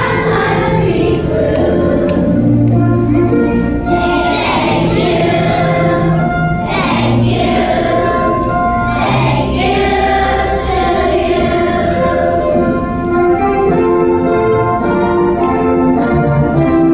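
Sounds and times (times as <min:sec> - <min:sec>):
children's choir singing: 0:00.0 - 0:15.4
instrumental accompaniment: 0:00.0 - 0:16.9.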